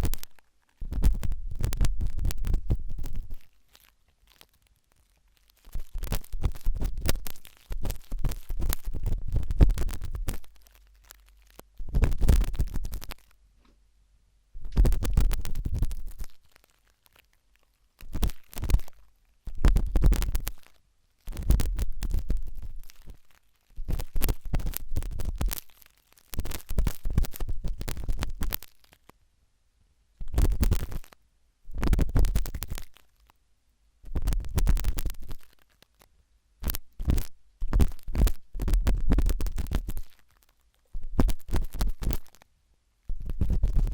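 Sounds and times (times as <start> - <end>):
toothpick scratching in ear: 36.6 - 40.4, 41.0 - 42.4, 43.1 - 43.9.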